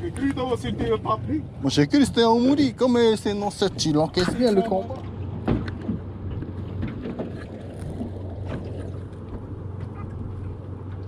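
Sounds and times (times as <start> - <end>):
boat engine humming: 0.0 - 11.0
water noise: 0.0 - 11.0
wind: 0.0 - 11.0.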